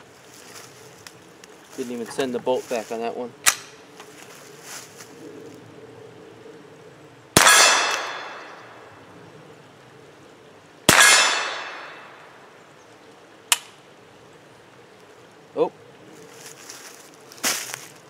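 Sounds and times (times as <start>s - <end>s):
steel target ringing: 7.4s - 8.6s, 10.9s - 12.1s
rifle shots: 7.4s - 8.7s, 10.9s - 12.1s.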